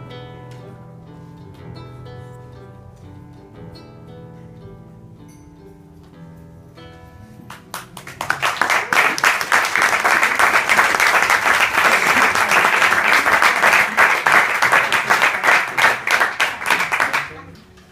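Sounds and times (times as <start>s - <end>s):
audience applauding: 7.5s - 17.6s.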